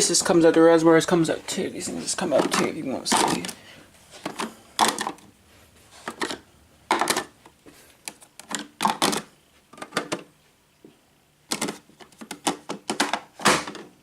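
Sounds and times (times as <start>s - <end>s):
plastic parts clicking and clattering: 2.2s - 3.6s, 4.2s - 5.3s, 6.0s - 7.4s, 8.0s - 10.3s, 11.5s - 14.0s.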